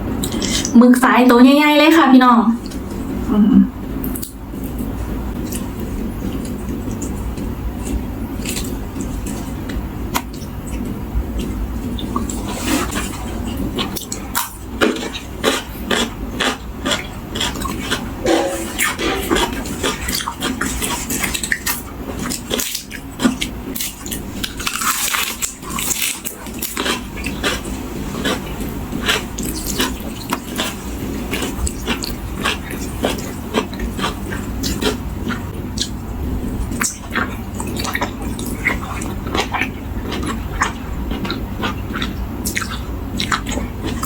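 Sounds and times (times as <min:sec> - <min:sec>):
wet chewing and squishing: 0:00.2 - 0:00.8, 0:04.0 - 0:44.0
steady low rumble: 0:34.5 - 0:40.1.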